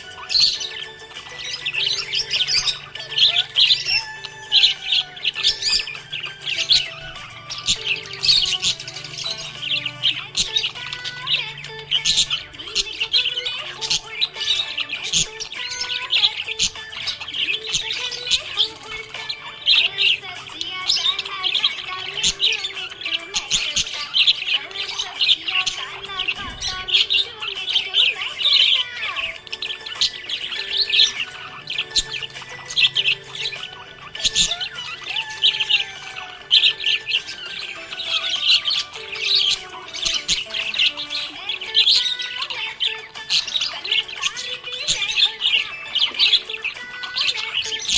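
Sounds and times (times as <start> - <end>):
background music: 0.0 - 47.9
budgerigars chirping: 0.0 - 47.9.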